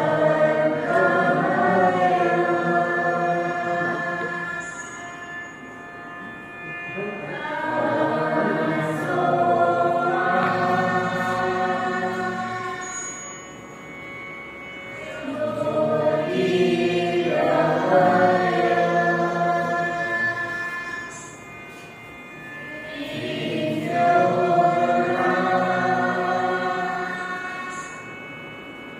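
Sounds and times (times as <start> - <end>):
group singing in unison: 0.0 - 4.9, 7.2 - 13.0, 15.0 - 21.4, 22.7 - 27.9.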